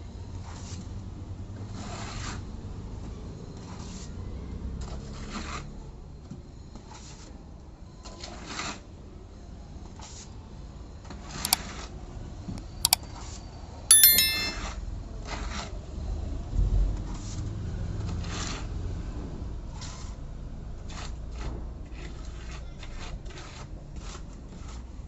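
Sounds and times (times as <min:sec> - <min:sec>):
ringing metallic clink: 0:13.9 - 0:14.7.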